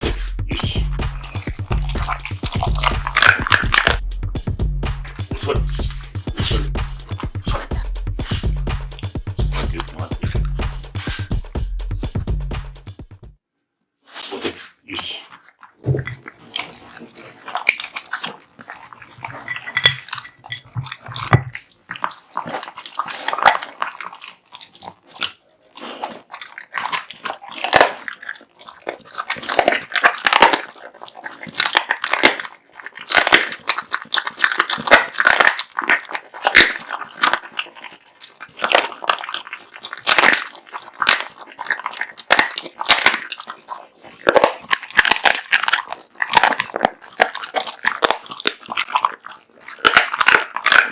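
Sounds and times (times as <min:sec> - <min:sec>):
dog crunching and chewing food: 0:14.2 - 0:50.9.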